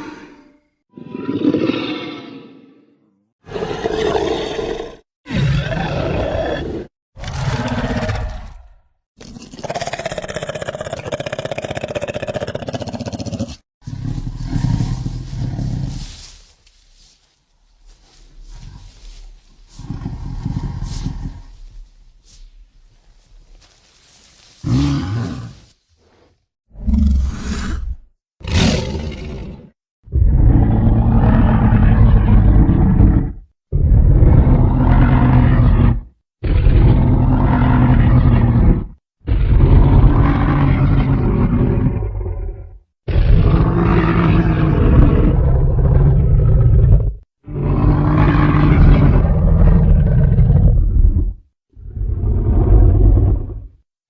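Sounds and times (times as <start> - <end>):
monster roars: 1.0 - 15.2, 26.8 - 51.2.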